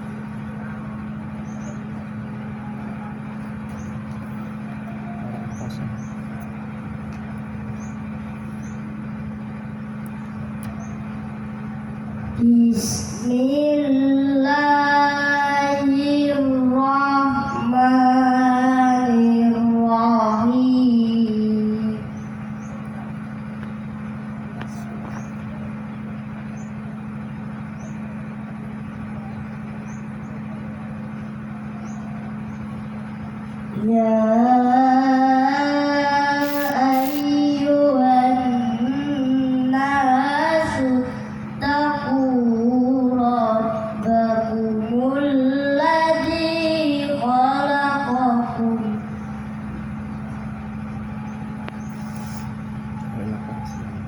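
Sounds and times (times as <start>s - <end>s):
low rumbling hum: 0.0s - 54.0s
woman chanting recitation: 12.4s - 22.2s, 33.8s - 49.2s
faint high chirps: 36.4s - 37.2s.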